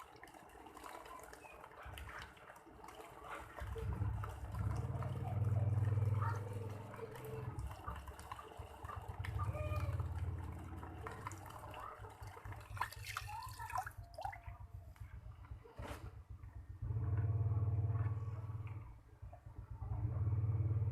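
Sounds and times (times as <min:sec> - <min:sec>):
water gurgling and splashing: 0:00.0 - 0:15.3
low motor hum: 0:01.4 - 0:20.9.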